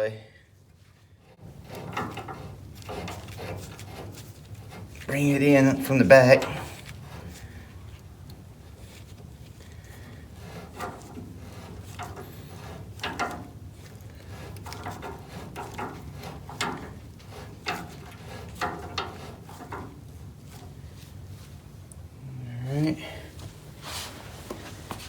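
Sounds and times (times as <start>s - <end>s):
knocks and scrapes on metal: 1.3s - 7.8s, 8.4s - 21.4s.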